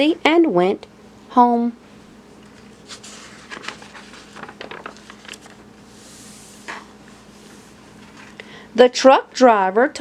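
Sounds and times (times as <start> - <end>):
paper pages turning: 2.4 - 6.8.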